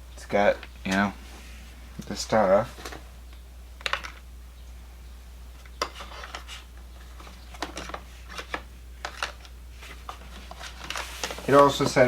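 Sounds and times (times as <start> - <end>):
steady low hum: 0.0 - 12.0
small items clicking and knocking: 3.8 - 4.2.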